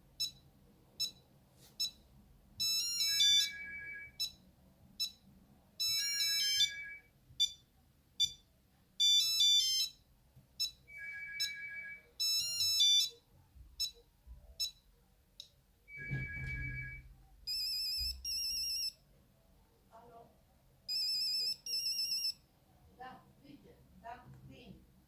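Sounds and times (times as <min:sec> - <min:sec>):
mobile phone beep ringtone: 0:02.6 - 0:04.4, 0:05.8 - 0:07.6, 0:09.0 - 0:10.0, 0:10.6 - 0:13.2, 0:15.9 - 0:19.0, 0:20.9 - 0:22.4.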